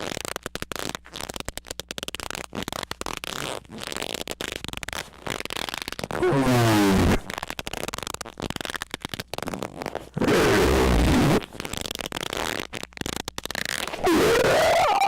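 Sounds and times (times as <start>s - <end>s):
crackling clicks: 11.1s - 15.0s
loud distorted squeaks: 13.9s - 15.0s.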